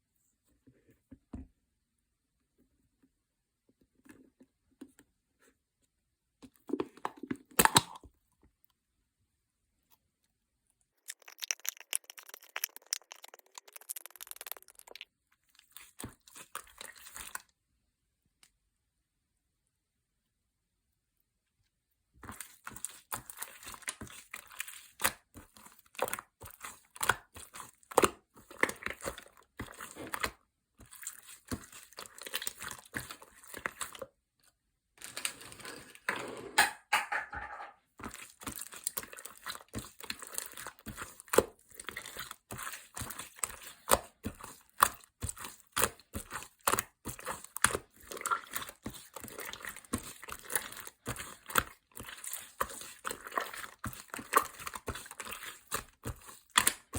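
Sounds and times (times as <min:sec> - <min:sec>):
objects clicking and tapping: 0:11.1 - 0:15.0, 0:36.6 - 0:37.8.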